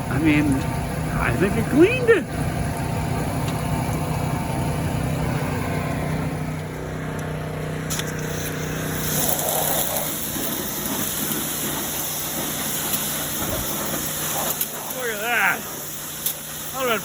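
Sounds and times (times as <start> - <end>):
small gasoline engine running: 0.0 - 17.0
high hiss: 8.0 - 17.0.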